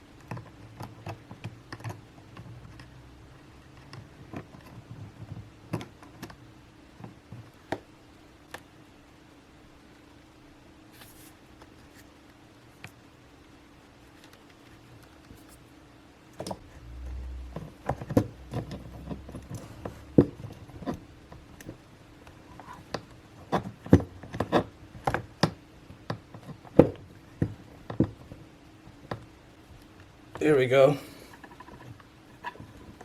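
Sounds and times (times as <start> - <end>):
low rumble: 16.5 - 21.4.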